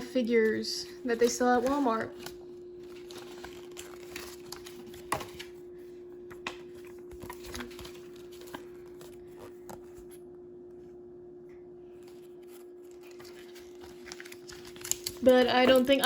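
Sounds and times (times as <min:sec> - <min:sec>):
steady hum: 0:00.0 - 0:16.0.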